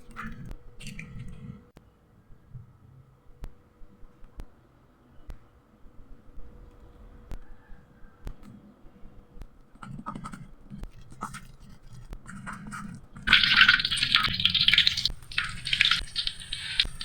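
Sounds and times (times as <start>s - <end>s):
snacks sizzling in hot oil: 13.3s - 17.0s.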